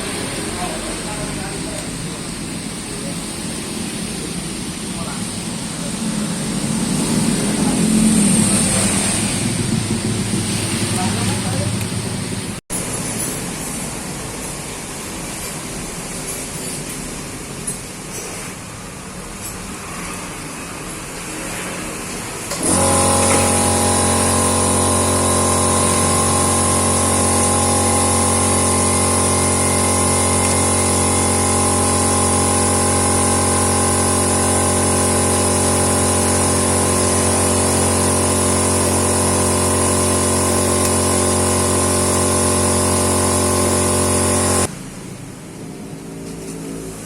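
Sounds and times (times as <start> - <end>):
steady machine hum: 22.6 - 46.2.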